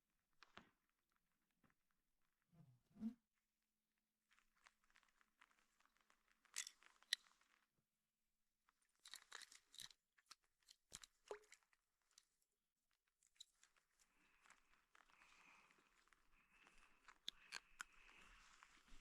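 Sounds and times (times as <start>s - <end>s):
faint crunching and rustling: 4.2s - 7.9s, 8.6s - 19.0s.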